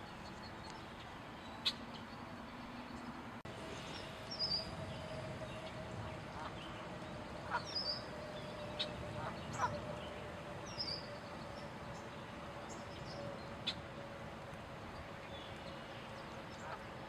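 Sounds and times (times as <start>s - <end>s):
steady background noise: 0.0s - 17.0s
bird calling: 3.7s - 14.0s.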